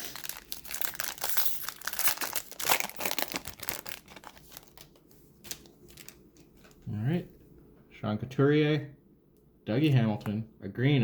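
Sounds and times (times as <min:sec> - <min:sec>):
card pack wrapper tearing: 0:00.0 - 0:06.8.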